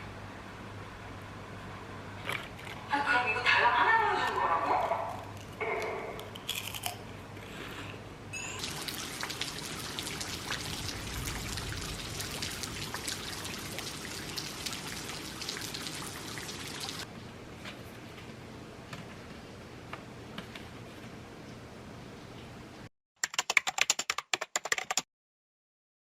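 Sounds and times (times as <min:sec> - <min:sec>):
rain falling steadily: 0:08.6 - 0:17.1.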